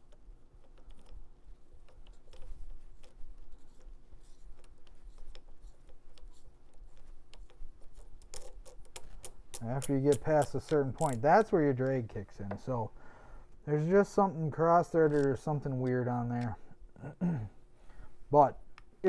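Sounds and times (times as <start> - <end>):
small metal parts clicking: 7.4 - 12.0.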